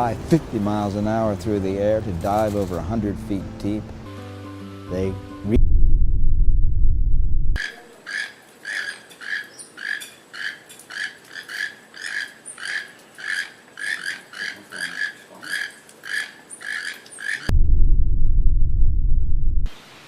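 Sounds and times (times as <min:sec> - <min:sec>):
low rumble: 0:05.5 - 0:07.6, 0:17.5 - 0:19.7.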